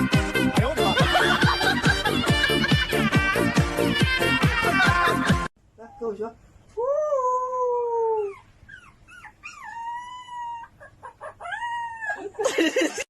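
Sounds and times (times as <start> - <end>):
dog howling and yelping: 7.0 - 12.4.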